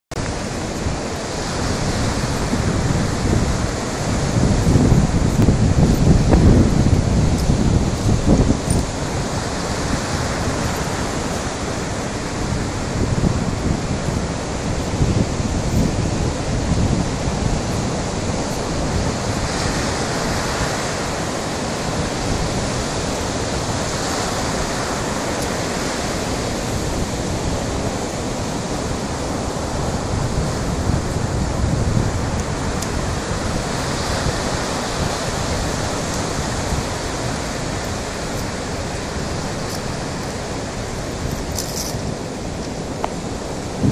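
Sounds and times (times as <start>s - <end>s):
sea waves washing onto shore: 0.1s - 43.9s.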